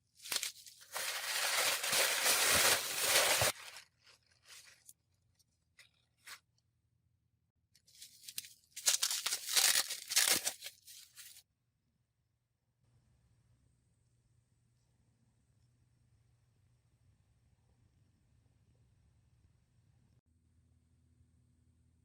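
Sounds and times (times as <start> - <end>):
packaging tearing: 0.3 - 3.8, 8.3 - 11.3.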